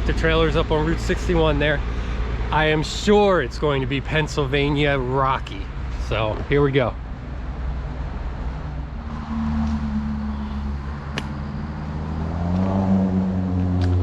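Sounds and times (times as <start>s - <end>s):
highway traffic: 0.0s - 14.0s
truck engines droning: 0.0s - 14.0s.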